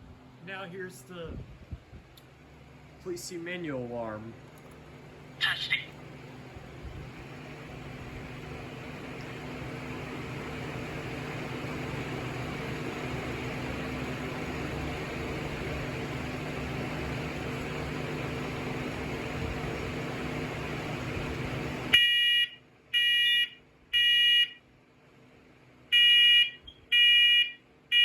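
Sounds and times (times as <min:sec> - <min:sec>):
smoke alarm beeping: 0:21.9 - 0:24.6, 0:25.9 - 0:28.0.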